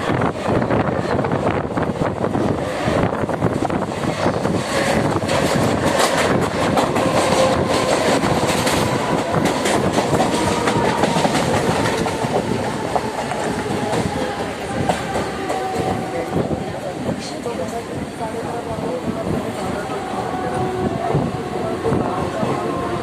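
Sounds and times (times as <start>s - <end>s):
train wheels clattering: 3.5s - 17.9s.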